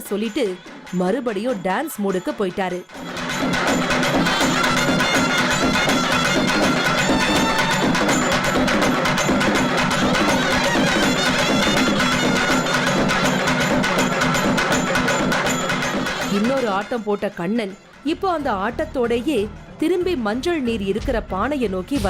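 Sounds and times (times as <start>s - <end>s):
fast dense drumming: 2.9s - 16.8s
reedy wind instrument melody: 10.1s - 13.5s.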